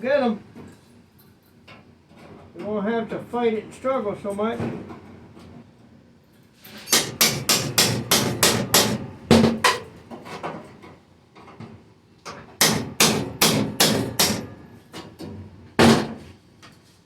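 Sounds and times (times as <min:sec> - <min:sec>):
hammer striking screwdriver into metal: 0:06.8 - 0:09.8, 0:12.6 - 0:14.5.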